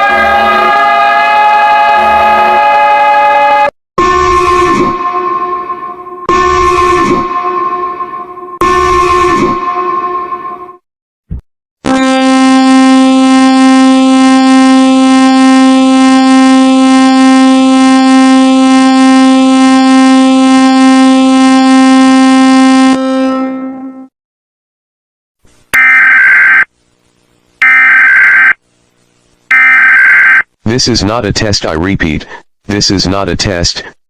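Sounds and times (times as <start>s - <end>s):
buzzing alarm tone: 11.9s - 23.0s, 25.8s - 26.7s, 27.6s - 28.6s, 29.5s - 30.5s.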